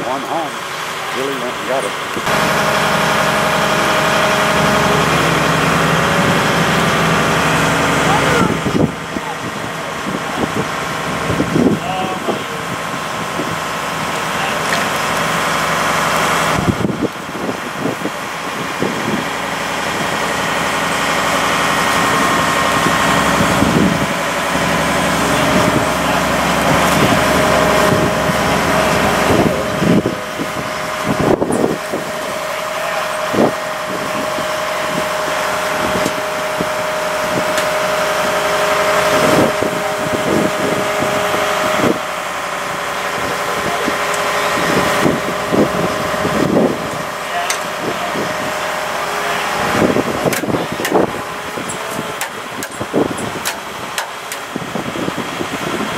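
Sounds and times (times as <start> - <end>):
engine running: 0.0 - 55.9
steady whine: 0.0 - 55.9.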